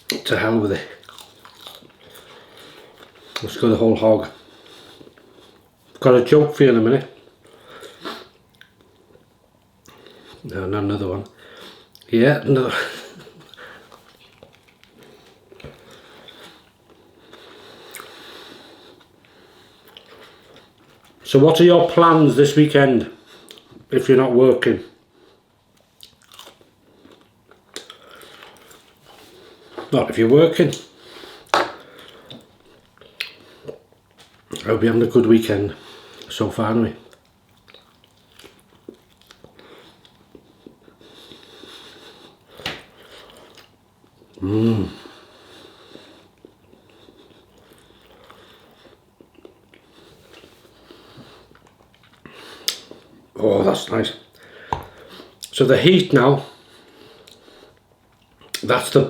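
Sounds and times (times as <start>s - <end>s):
person chewing: 0.0s - 3.5s, 13.0s - 21.2s, 25.7s - 30.0s, 30.7s - 34.6s, 37.1s - 55.6s
person biting and chewing food: 0.9s - 3.5s, 13.4s - 18.2s, 25.9s - 29.9s, 46.4s - 53.8s
wet mouth clicks: 52.0s - 53.0s.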